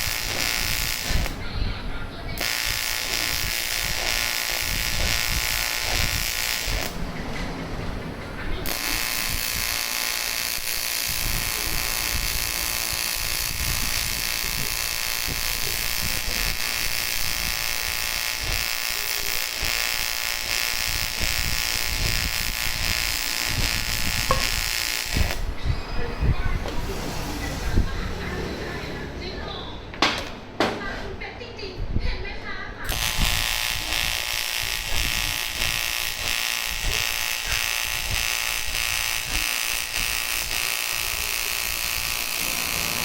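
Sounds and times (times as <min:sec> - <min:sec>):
welding arc buzzing: 0:00.0 - 0:07.2, 0:08.6 - 0:25.6, 0:32.9 - 0:43.0.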